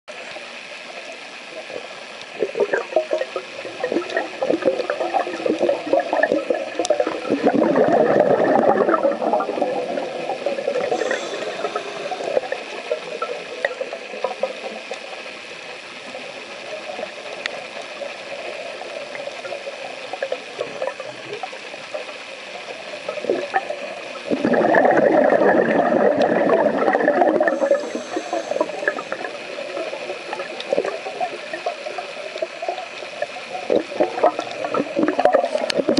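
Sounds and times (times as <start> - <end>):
faint clicks: 0.2 - 7.2, 10.4 - 24.2, 26.9 - 35.9
underwater hiss: 0.2 - 35.9
exhaled bubbles from regulator: 2.4 - 14.9, 23.1 - 35.9.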